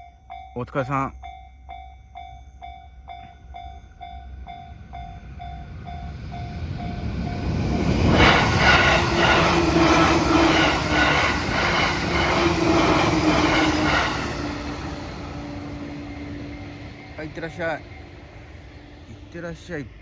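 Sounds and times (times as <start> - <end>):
level crossing warning bell dinging: 0.0 - 8.2, 8.8 - 19.8
train wheels clacking over rail joints: 6.6 - 16.5.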